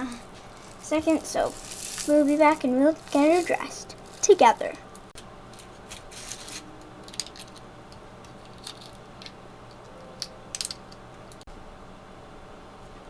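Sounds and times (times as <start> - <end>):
faint steady hum: 0.0 - 13.0
plastic toy pieces clicking: 10.2 - 11.0.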